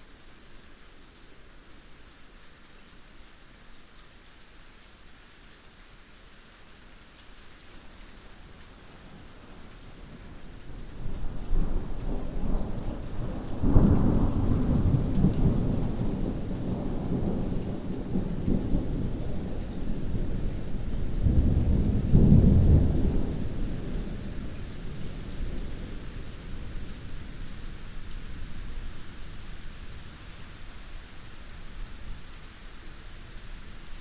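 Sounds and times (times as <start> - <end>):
heavy rain: 0.0 - 34.0
thunder rumbling: 11.0 - 30.6.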